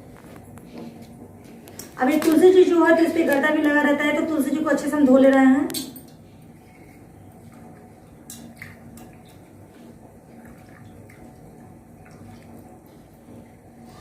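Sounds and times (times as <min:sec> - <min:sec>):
low background hum: 0:00.0 - 0:14.0
water dripping and splashing: 0:06.9 - 0:13.6.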